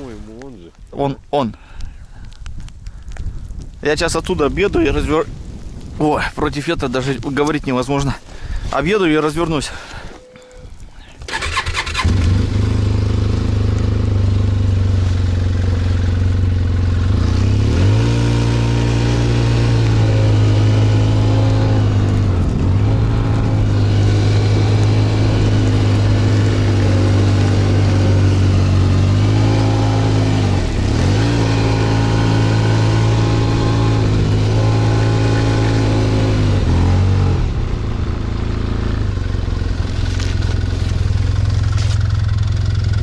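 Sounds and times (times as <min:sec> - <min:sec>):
snowmobile engine revving: 0:11.3 - 0:43.0.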